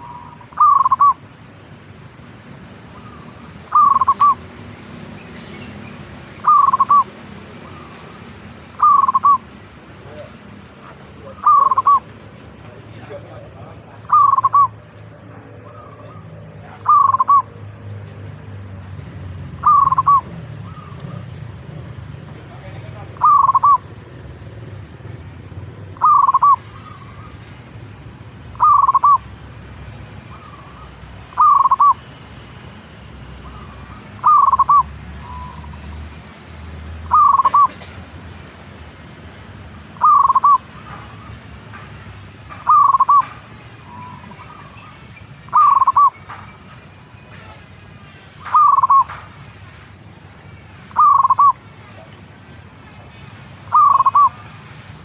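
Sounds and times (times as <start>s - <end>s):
dove cooing: 0.0s - 1.2s, 3.0s - 4.4s, 6.4s - 8.1s, 8.7s - 9.5s, 11.3s - 12.1s, 14.0s - 17.6s, 19.6s - 21.3s, 23.2s - 24.0s, 25.9s - 27.4s, 28.5s - 29.3s, 30.3s - 32.1s, 33.4s - 35.7s, 37.0s - 38.0s, 40.0s - 41.3s, 42.5s - 46.2s, 48.5s - 49.1s, 50.9s - 51.6s, 53.7s - 54.5s
faint bird chirps: 0.0s - 1.2s, 2.9s - 4.4s, 5.2s - 8.2s, 8.8s - 9.6s, 10.7s - 18.4s, 19.6s - 21.2s, 23.2s - 24.7s, 26.0s - 27.5s, 28.5s - 29.3s, 30.3s - 32.0s, 33.4s - 35.9s, 40.0s - 41.4s, 42.6s - 47.5s, 48.3s - 49.2s, 50.4s - 51.8s, 53.7s - 54.5s.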